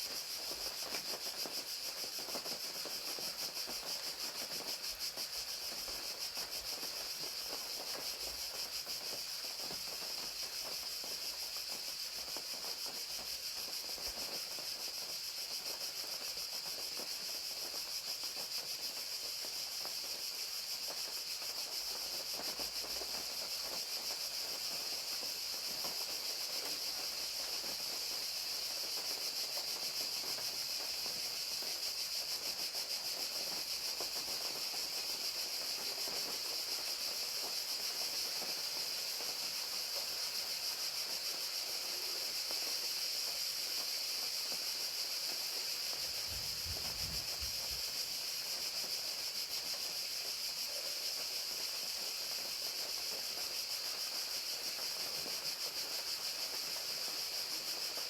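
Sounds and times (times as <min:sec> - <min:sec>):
crickets trilling: 0:00.0 - 0:58.0
rain falling: 0:33.2 - 0:49.9, 0:50.6 - 0:58.0.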